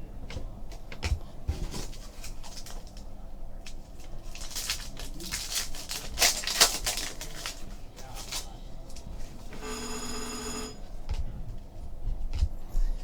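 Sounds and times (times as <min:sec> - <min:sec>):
cards and wrappers clicking: 0:03.7 - 0:08.5.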